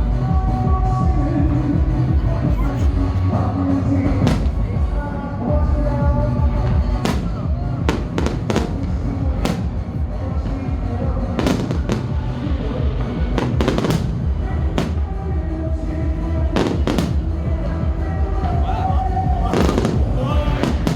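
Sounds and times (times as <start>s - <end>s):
music playing: 0.0s - 20.9s
fireworks bursting: 4.0s - 5.0s, 6.5s - 18.7s, 19.3s - 20.9s.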